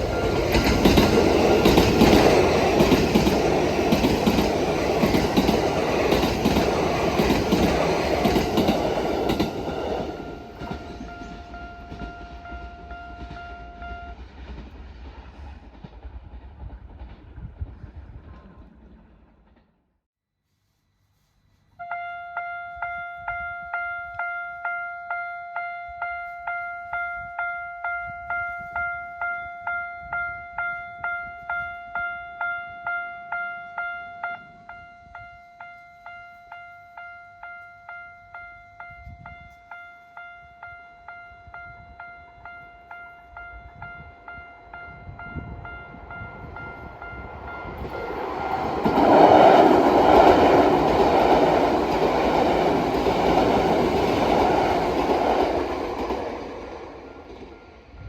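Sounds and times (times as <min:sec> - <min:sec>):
train rumbling: 0:00.0 - 0:19.8, 0:32.9 - 0:58.0.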